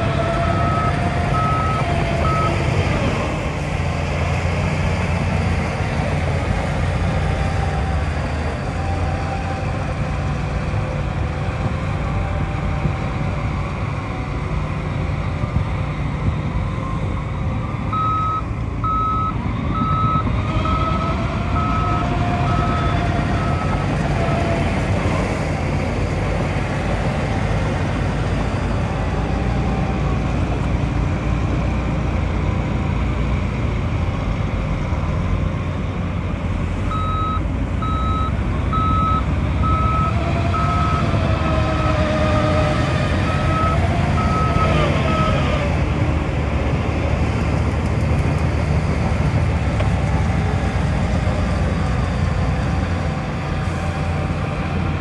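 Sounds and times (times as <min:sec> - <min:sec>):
diesel machinery running: 0:00.0 - 0:55.0
reversing alarm beeping: 0:00.3 - 0:02.6, 0:17.9 - 0:24.5, 0:36.9 - 0:41.2, 0:43.2 - 0:45.4.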